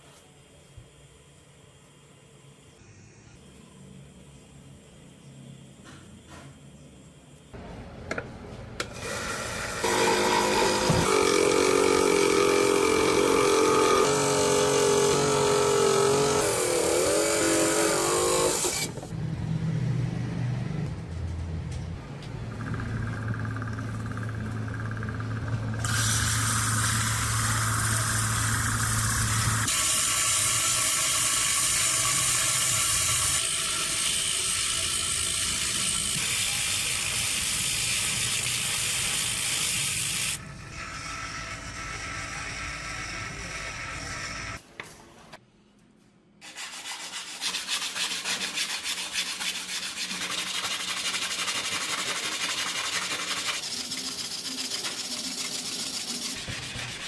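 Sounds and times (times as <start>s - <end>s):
power tool motor whine: 9.0s - 19.1s.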